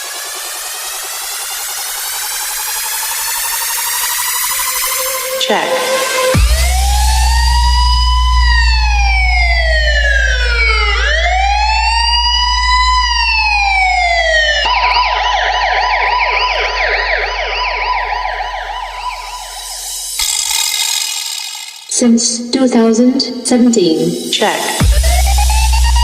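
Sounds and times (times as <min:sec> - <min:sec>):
police siren wailing and yelping: 0:00.0 - 0:21.0
deep bass note: 0:05.0 - 0:11.6, 0:24.8 - 0:26.0.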